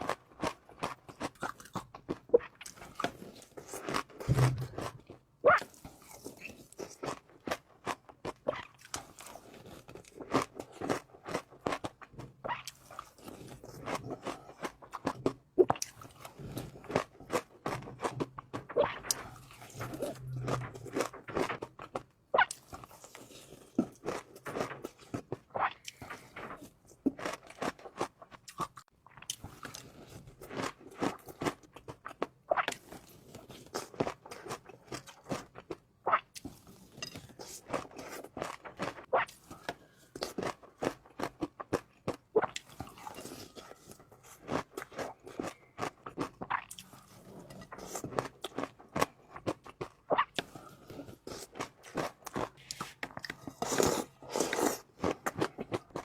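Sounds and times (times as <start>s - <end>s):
person chewing food: 0.0s - 56.0s.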